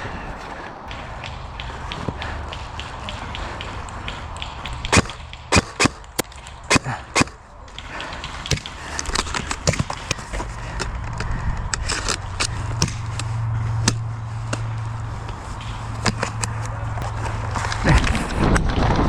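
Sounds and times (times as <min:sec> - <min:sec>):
low steady hum: 0:00.0 - 0:19.0
airsoft guns firing: 0:00.9 - 0:11.0.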